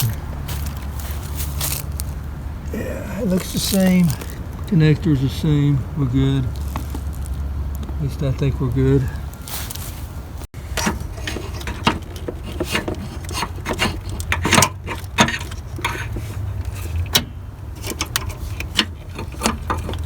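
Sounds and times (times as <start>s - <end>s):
metallic clicks and knocks: 10.7s - 20.0s.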